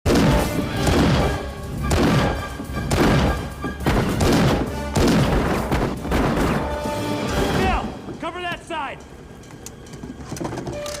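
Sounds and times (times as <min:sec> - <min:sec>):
loud gunshots: 0:00.1 - 0:06.8
film music: 0:00.1 - 0:11.0.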